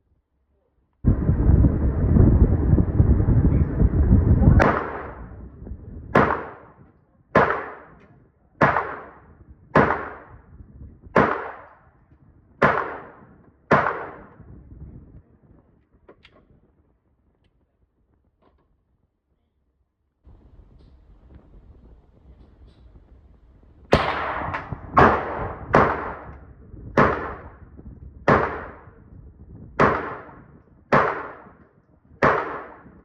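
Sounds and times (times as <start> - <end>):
wind on microphone: 1.0 - 7.3, 7.9 - 18.3, 20.3 - 33.0
gunshots with echo: 4.6 - 5.4, 6.1 - 10.4, 11.2 - 11.8, 12.6 - 14.4, 23.9 - 27.7, 28.3 - 29.0, 29.8 - 31.6, 32.2 - 33.0.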